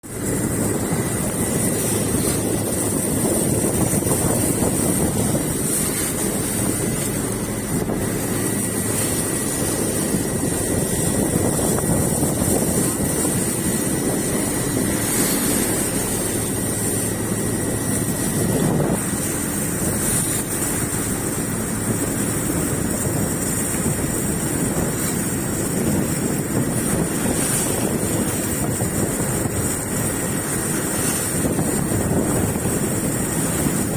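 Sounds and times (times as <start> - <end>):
boat engine running: 0.0 - 33.9
wind buffeting microphone: 0.0 - 33.9.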